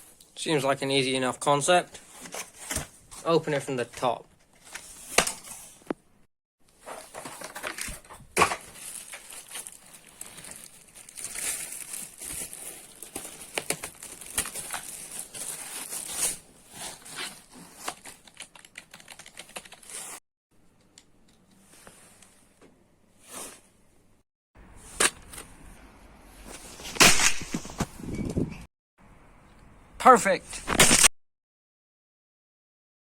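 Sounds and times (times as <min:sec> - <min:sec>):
plastic and paper crinkling: 0:06.8 - 0:20.2.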